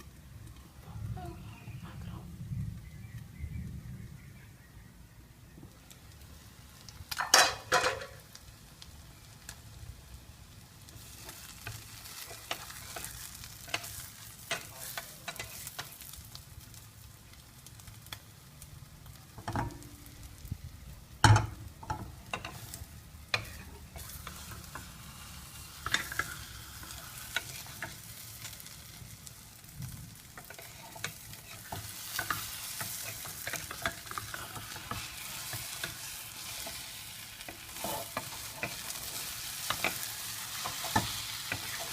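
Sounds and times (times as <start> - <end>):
food sizzling in a pan: 5.7 - 41.9
utensil scraping a pan: 11.0 - 16.0, 21.3 - 28.2, 30.3 - 41.9.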